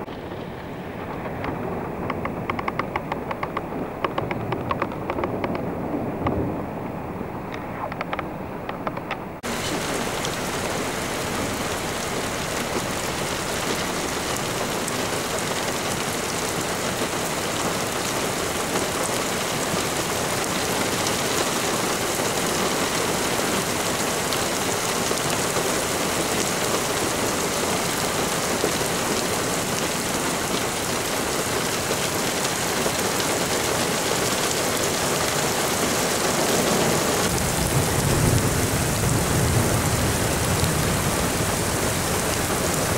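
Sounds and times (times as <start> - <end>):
heavy rain hissing: 9.4 - 42.9.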